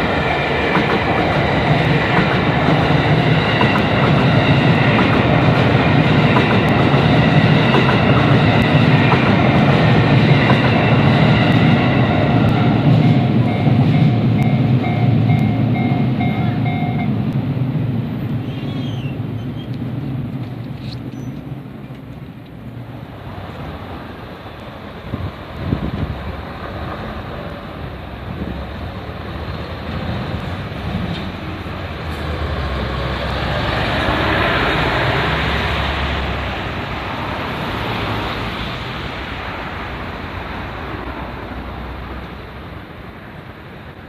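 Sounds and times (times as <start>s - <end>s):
traffic rumble: 0.0s - 44.0s.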